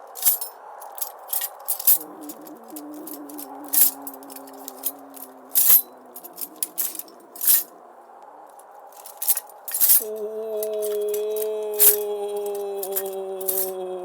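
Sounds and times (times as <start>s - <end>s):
sharp metallic clinks: 0.0s - 7.8s, 9.0s - 13.8s
low eerie droning tone: 0.1s - 8.2s.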